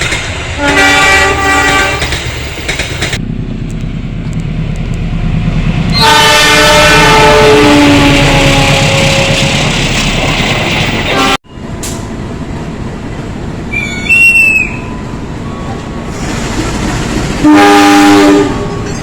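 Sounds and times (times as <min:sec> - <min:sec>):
passing train noise: 0:00.0 - 0:19.0
locomotive horn blast: 0:00.6 - 0:02.2, 0:05.9 - 0:09.7, 0:11.0 - 0:12.0, 0:17.4 - 0:19.0.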